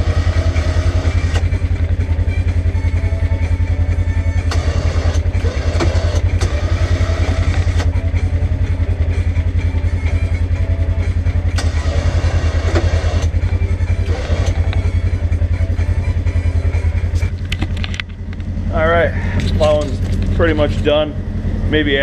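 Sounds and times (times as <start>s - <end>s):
engine pulsing low rumble: 0.0s - 22.0s
sharp knocks and clicks: 17.2s - 18.5s.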